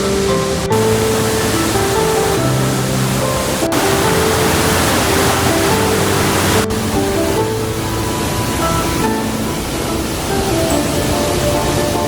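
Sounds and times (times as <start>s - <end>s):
music with slow held notes: 0.0s - 12.0s
rushing water: 0.0s - 12.0s.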